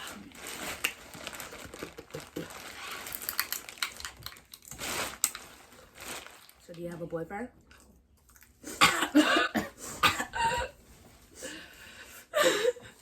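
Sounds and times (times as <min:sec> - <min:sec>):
crinkling wrappers while eating: 0:00.0 - 0:07.1.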